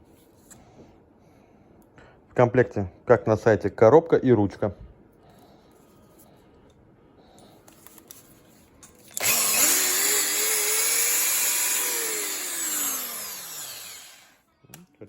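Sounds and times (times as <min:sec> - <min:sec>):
electric drill motor whine: 0:09.1 - 0:14.4.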